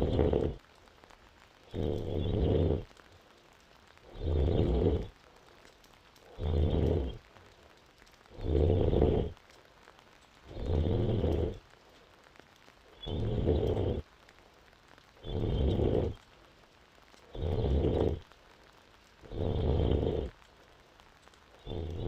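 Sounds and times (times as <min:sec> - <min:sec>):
quiet breathing: 0:00.0 - 0:22.0.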